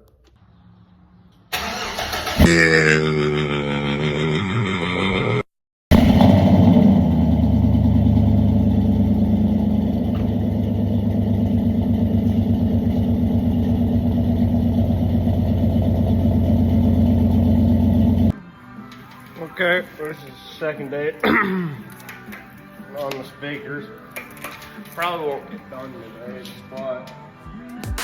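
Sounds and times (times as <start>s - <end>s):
truck engine idling: 6.0s - 18.3s.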